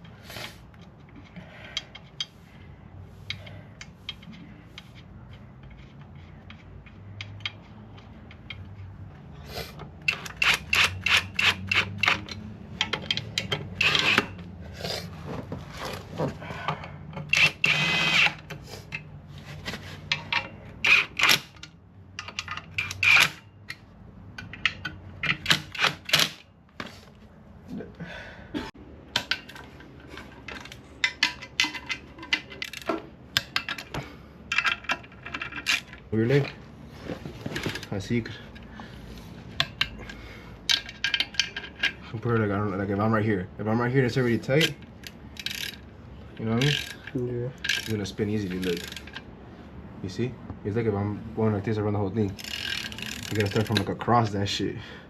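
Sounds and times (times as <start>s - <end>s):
metal tools clinking: 29.2s - 36.6s, 44.2s - 49.3s, 52.3s - 54.0s.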